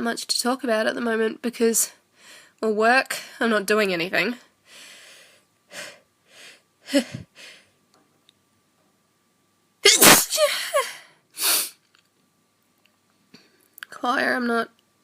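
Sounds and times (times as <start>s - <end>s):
woman sneezing: 9.8s - 11.8s.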